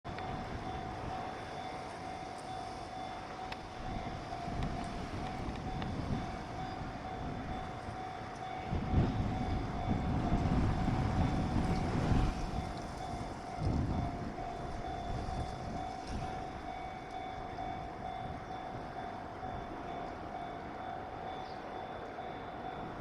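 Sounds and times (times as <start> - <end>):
freight train rumbling: 0.0 - 23.0
level-crossing alarm ringing: 0.1 - 23.0.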